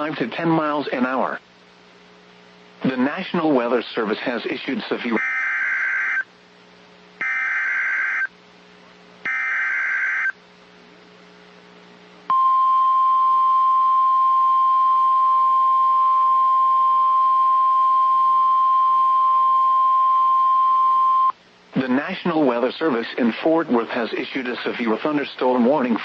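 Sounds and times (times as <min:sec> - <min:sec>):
steady warning alarm tone: 0:05.2 - 0:06.3, 0:07.2 - 0:08.3, 0:09.3 - 0:10.4.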